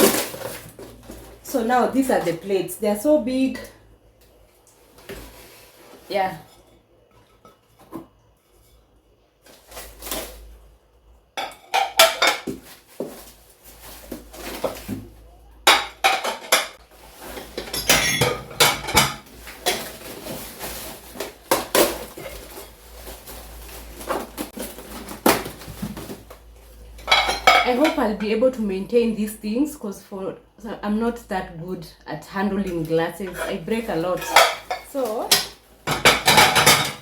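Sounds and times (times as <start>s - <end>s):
dinner plates clinking together: 17.6s - 19.8s, 34.2s - 37.0s.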